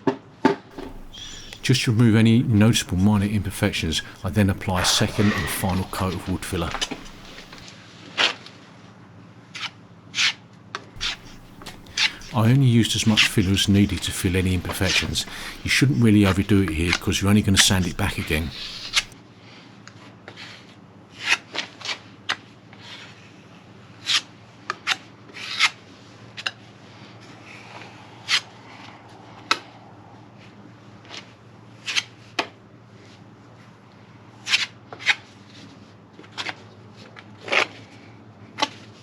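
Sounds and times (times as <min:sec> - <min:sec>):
filler knife scraping: 0:00.8 - 0:01.7, 0:11.0 - 0:19.1.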